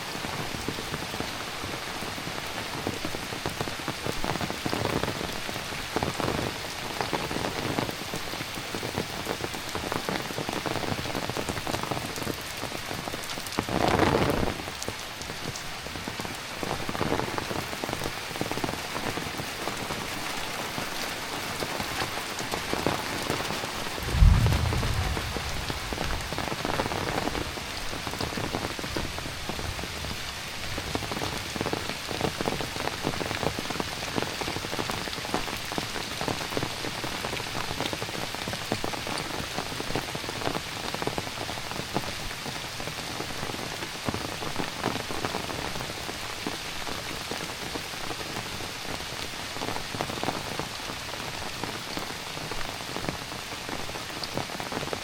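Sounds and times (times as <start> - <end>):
heavy rain: 0.0 - 55.0
deep thump: 24.0 - 26.9.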